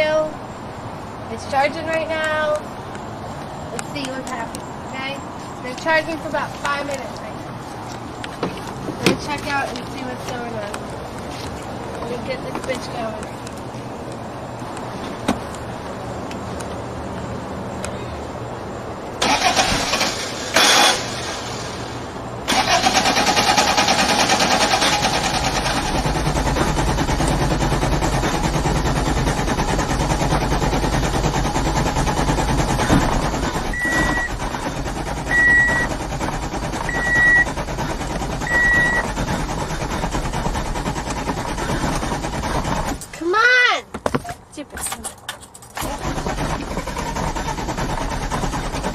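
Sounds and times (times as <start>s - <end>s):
starter motor cranking engine: 19.2s - 43.3s, 45.8s - 48.9s
dashboard warning beeps: 33.7s - 34.4s, 35.3s - 35.9s, 36.9s - 37.5s, 38.4s - 39.1s.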